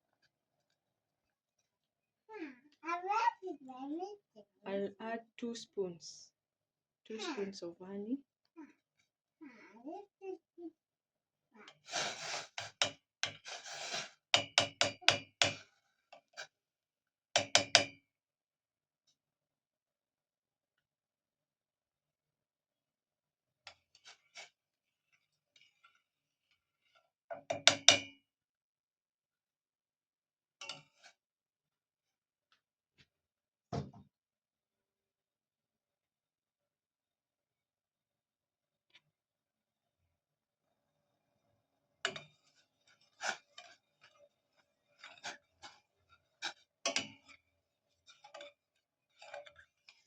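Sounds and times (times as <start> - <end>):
spoon clinking on a pot: 17.4 - 18.0, 46.8 - 47.4.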